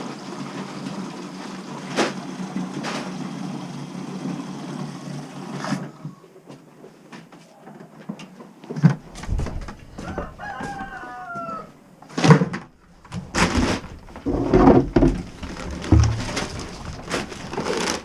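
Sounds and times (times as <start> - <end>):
loud knocks and scraping: 8.8 - 11.0, 12.1 - 18.0
rooster crowing: 9.9 - 11.8.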